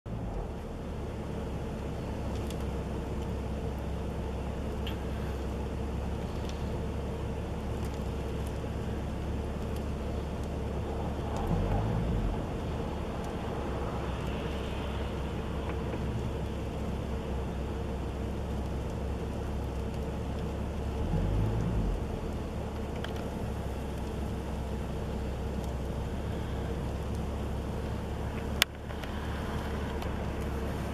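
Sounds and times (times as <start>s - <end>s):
light ticks: 2.2s - 3.4s, 22.7s - 23.3s, 25.5s - 26.0s, 28.3s - 30.9s
wind rumbling on microphone: 8.1s - 18.8s.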